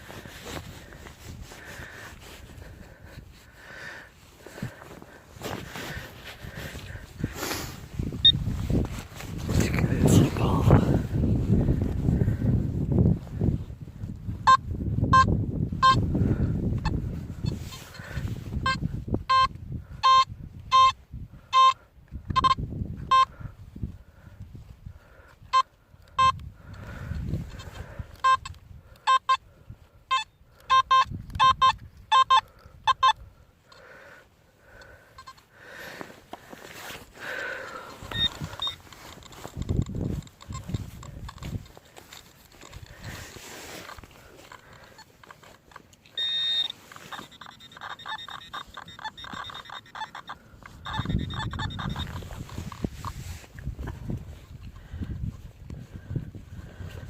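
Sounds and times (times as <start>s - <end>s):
handling rumble and rustling: 0.0s - 14.4s, 35.8s - 46.1s
metal detector beeps: 8.1s - 8.4s, 14.4s - 16.0s, 16.8s - 23.4s, 25.5s - 26.4s, 27.5s - 29.5s, 30.1s - 33.2s, 35.2s - 35.4s, 37.7s - 54.0s.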